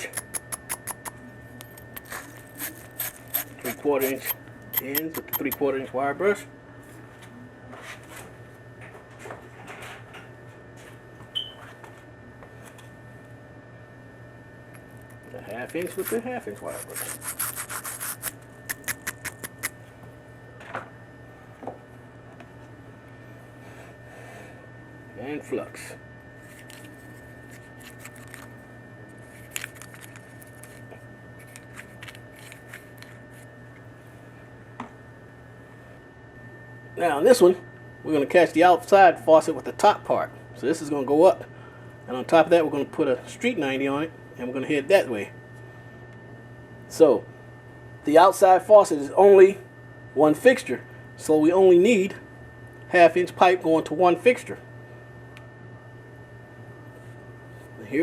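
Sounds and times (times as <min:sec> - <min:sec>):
steady low hum: 0:00.0 - 0:58.0
wire brush scratching metal: 0:02.0 - 0:05.3, 0:15.8 - 0:19.7.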